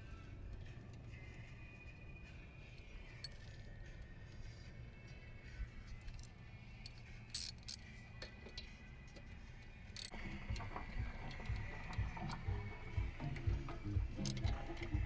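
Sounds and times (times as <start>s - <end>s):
metallic clinks of hand tools: 6.0s - 8.7s, 9.9s - 10.2s, 14.2s - 14.9s
music with low regular beat: 10.0s - 15.0s.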